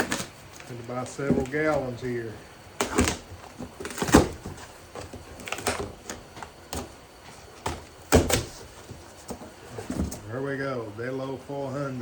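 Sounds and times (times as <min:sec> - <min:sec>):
plastic jugs knocking and thumping: 0:00.0 - 0:02.2, 0:02.8 - 0:10.3.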